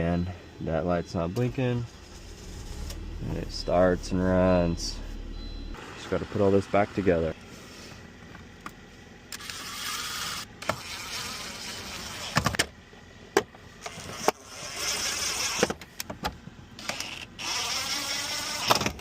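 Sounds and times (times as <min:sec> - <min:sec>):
buzzing whir: 0:01.4 - 0:05.9.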